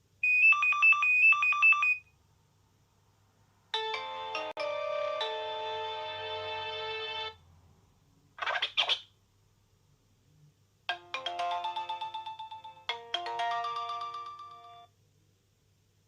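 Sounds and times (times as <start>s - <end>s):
chirping phone tones: 0.2s - 2.1s
electronic ringtone melody: 3.8s - 7.3s, 10.9s - 14.9s.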